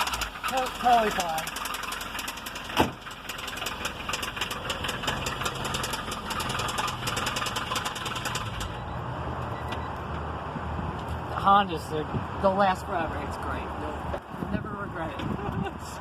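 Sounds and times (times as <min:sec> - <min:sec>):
car engine knocking: 0:00.0 - 0:08.8.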